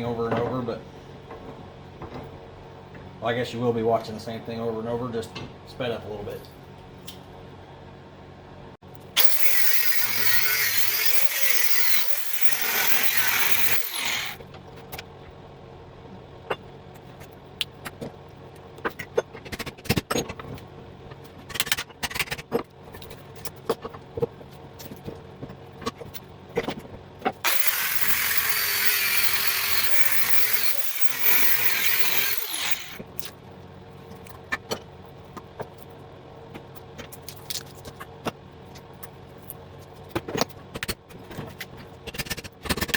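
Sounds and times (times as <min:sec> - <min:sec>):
angle grinder cutting steel: 0:09.2 - 0:14.4, 0:27.4 - 0:33.0.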